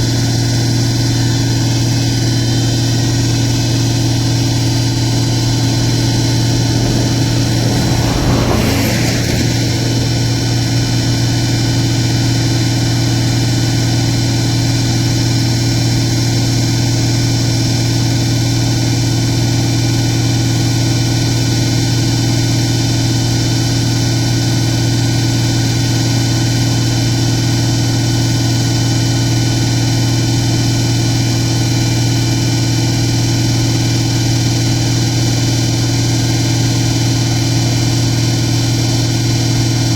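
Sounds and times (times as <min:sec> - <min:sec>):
brief rush of noise: 0:04.4 - 0:11.8.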